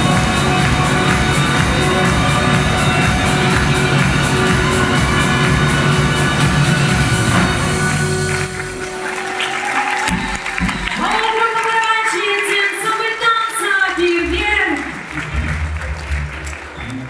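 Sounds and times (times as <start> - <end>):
group drumming a steady beat: 0.0 - 9.1, 10.0 - 11.2.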